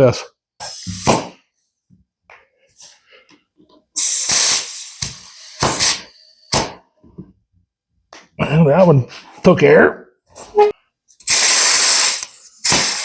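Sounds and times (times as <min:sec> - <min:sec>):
compressed air hissing: 0:00.6 - 0:01.4, 0:04.0 - 0:06.6, 0:11.2 - 0:13.0.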